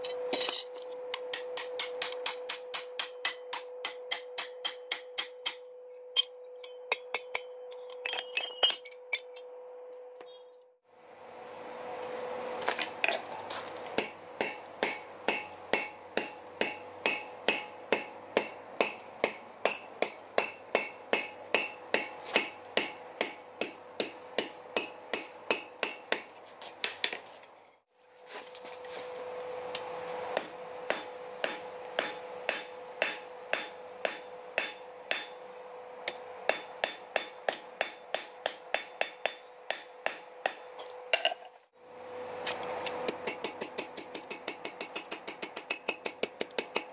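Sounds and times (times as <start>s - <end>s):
hammer striking steel on anvil: 0.0s - 9.5s, 14.0s - 27.2s, 30.3s - 41.4s, 42.8s - 46.9s
steady hum: 28.3s - 41.2s.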